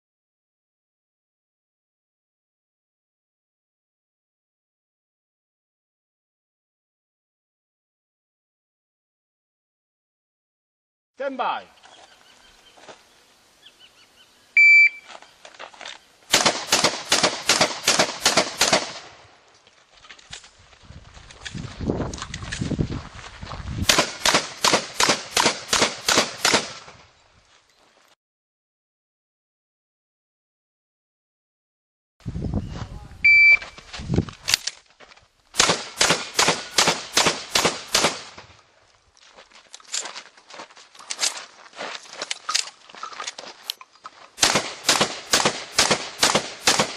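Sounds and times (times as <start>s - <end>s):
shot timer beep: 14.6s - 15.1s, 33.2s - 33.7s
shotgun firing rapidly: 16.3s - 19.1s, 23.8s - 26.9s, 35.6s - 38.4s, 44.4s - 46.9s.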